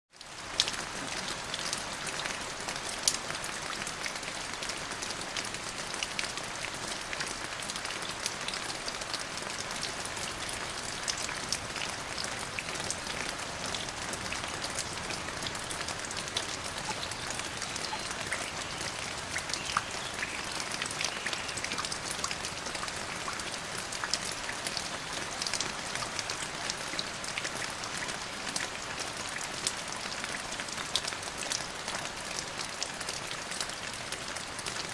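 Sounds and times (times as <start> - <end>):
rain hissing: 9.6 - 24.0.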